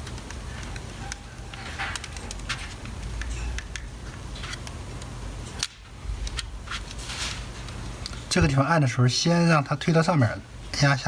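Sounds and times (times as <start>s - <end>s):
plastic parts clicking and scraping: 0.0s - 8.2s.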